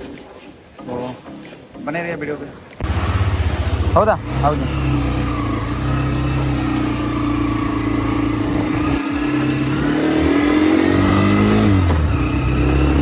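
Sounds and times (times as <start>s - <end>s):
motorcycle engine running: 2.8s - 13.0s.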